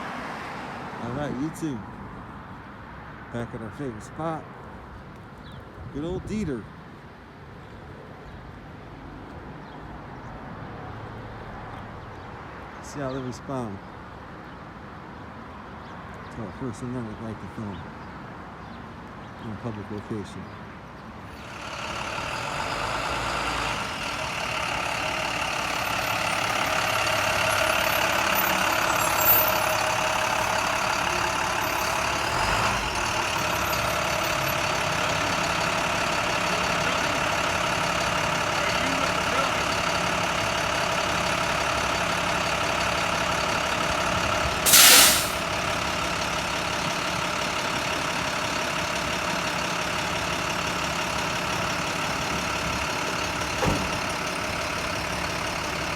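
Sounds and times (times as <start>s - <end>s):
engine idling hum: 21.3s - 55.9s
loud burst of hiss: 44.7s - 45.5s.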